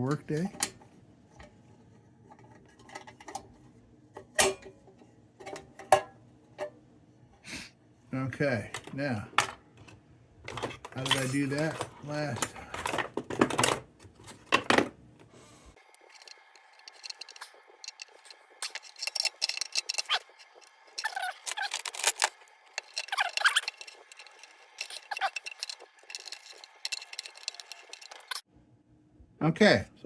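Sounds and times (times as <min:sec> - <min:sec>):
metal parts clicking: 0:10.5 - 0:13.8, 0:15.8 - 0:28.4
metal parts scraping: 0:10.5 - 0:14.5, 0:15.8 - 0:28.4.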